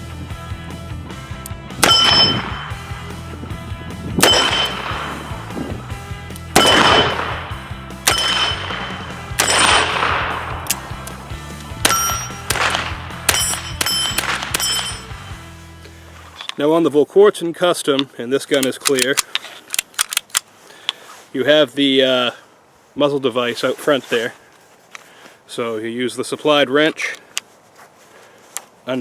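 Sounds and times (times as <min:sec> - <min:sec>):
light background music: 0:00.0 - 0:16.4
steel plate ringing clang: 0:01.8 - 0:02.8, 0:04.2 - 0:05.0, 0:08.1 - 0:10.0, 0:11.9 - 0:12.5, 0:13.3 - 0:15.2
revolver shots: 0:06.6 - 0:10.9.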